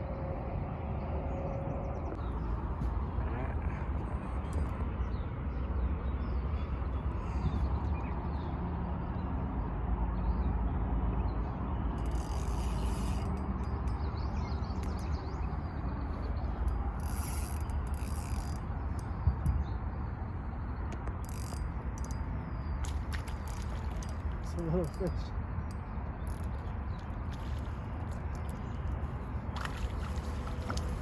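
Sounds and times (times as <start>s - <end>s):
fishing reel whirring: 12.0s - 13.9s, 16.5s - 19.1s, 21.2s - 22.3s.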